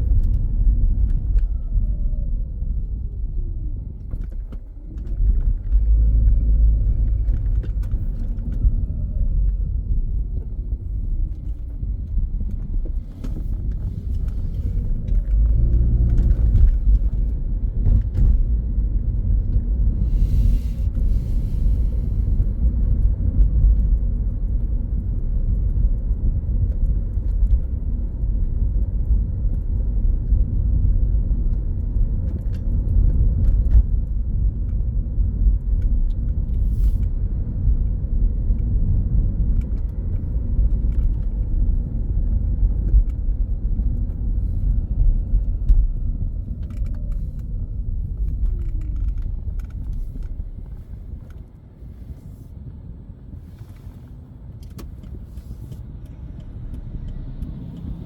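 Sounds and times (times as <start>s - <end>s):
steady low rumble: 0.0s - 58.0s.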